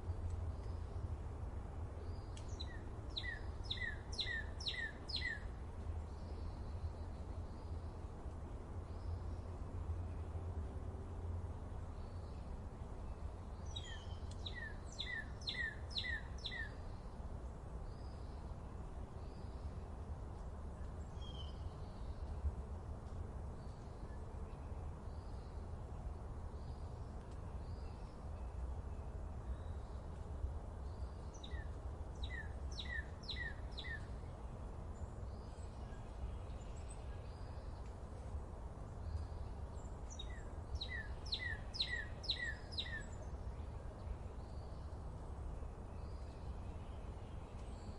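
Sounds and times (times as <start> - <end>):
faint bird chirps: 13.6 - 17.1, 30.8 - 34.2, 39.0 - 43.4
songbird singing high notes: 13.7 - 16.8, 31.4 - 34.1, 40.1 - 43.2.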